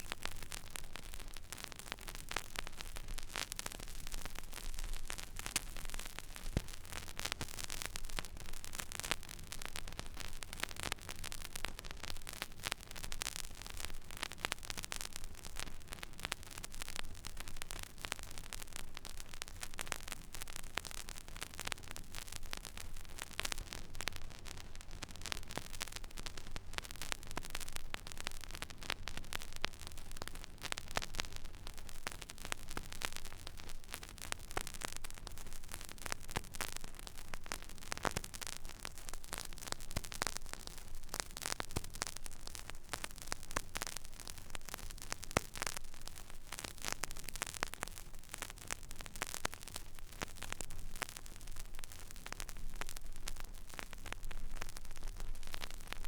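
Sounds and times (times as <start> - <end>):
vinyl surface hiss: 0.0 - 7.9
vinyl crackles and pops: 0.0 - 56.0.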